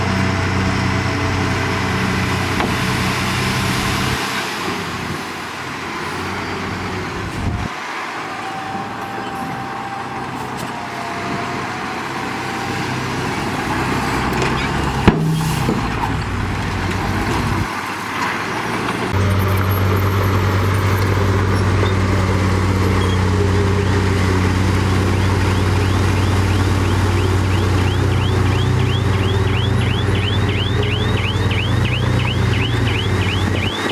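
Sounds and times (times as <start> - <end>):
deep engine drone: 0.0 - 4.3, 19.1 - 33.9
heavy machinery diesel engine: 0.0 - 33.9.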